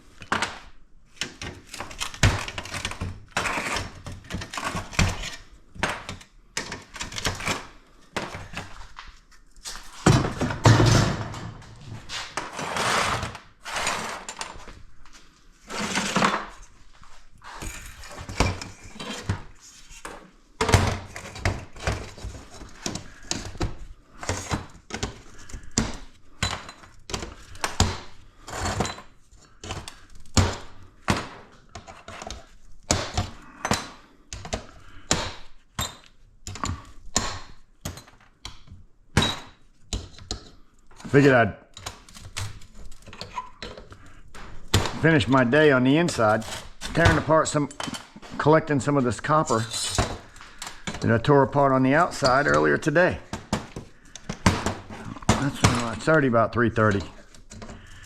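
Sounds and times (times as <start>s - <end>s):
metal scraping: 10.0s - 14.6s
scrap metal knocks and clanks: 10.0s - 14.7s.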